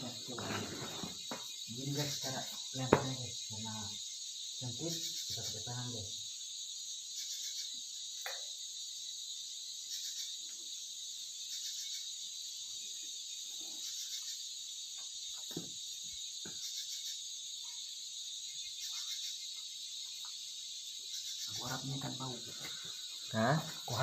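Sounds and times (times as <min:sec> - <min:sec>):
insects chirping: 0:00.0 - 0:24.0
faint knocks and scrapes: 0:00.2 - 0:01.6.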